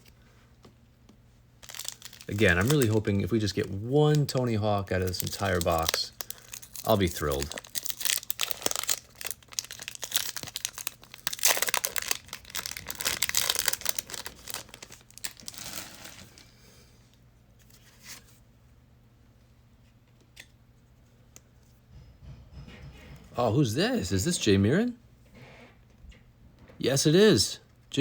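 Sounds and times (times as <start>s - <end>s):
wrapper tearing and crinkling: 1.6s - 16.4s.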